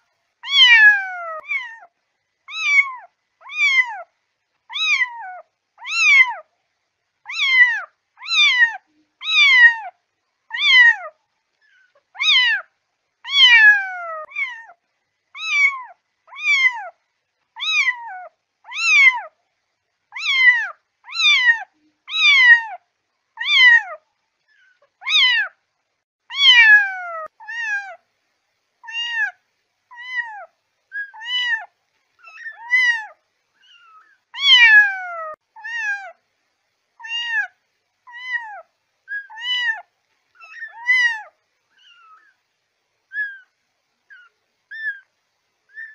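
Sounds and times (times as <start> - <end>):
kitten meowing: 0.4 - 1.9, 2.5 - 4.1, 4.7 - 6.4, 7.3 - 9.9, 10.5 - 11.1, 12.1 - 12.6, 13.3 - 14.8, 15.4 - 17.0, 17.6 - 19.3, 20.1 - 22.8, 23.4 - 24.0, 25.0 - 25.5, 26.3 - 28.0, 28.8 - 36.2, 37.0 - 42.4, 43.1 - 43.5, 44.1 - 45.1.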